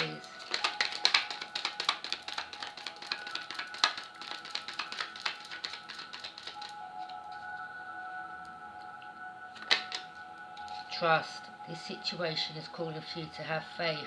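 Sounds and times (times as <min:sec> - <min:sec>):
cards being shuffled: 0:00.0 - 0:07.2, 0:09.6 - 0:10.8
background music with held tones: 0:00.0 - 0:14.0.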